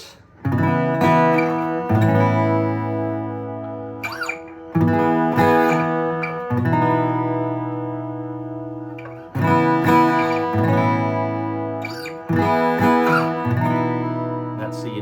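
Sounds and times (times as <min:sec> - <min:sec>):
guitar riff: 0:00.0 - 0:15.0
guitar string squeak: 0:04.0 - 0:04.9, 0:11.8 - 0:13.8.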